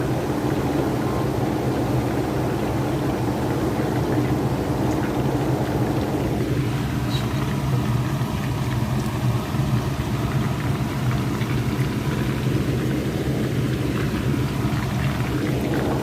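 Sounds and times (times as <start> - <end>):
oil crackling and popping: 6.4 - 16.0.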